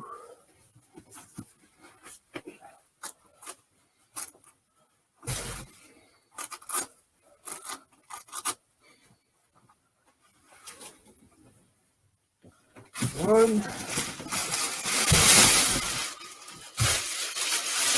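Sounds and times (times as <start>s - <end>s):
fabric and fur rustling: 12.9s - 17.9s.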